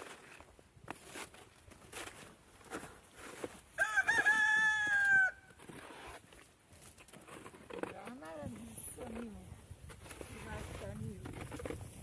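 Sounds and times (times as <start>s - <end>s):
rooster crowing: 3.8s - 5.6s.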